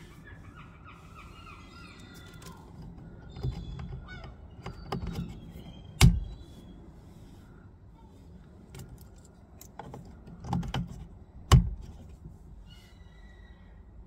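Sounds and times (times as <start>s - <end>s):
birds chirping: 0.0s - 8.6s, 12.6s - 14.0s
clicks and knocks on car door: 9.8s - 12.1s.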